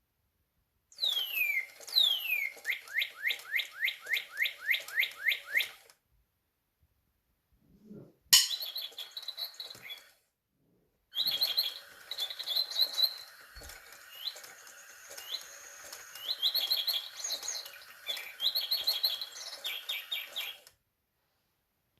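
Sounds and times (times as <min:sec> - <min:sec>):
toy bird chirps and trills: 0:01.0 - 0:05.9, 0:08.4 - 0:10.2, 0:11.1 - 0:20.7.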